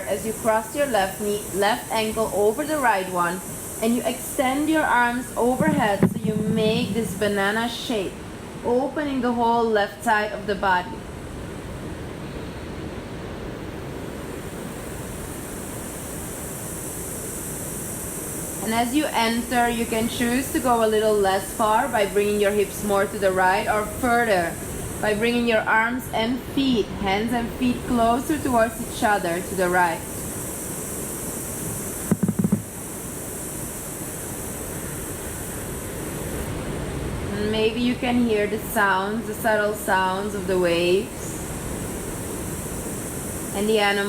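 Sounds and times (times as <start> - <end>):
waves washing on shore: 0.0 - 9.0, 12.8 - 44.0
high steady hiss: 0.0 - 44.0
ocean waves breaking: 4.4 - 8.7
quick low knocks: 5.6 - 7.4, 32.1 - 32.7.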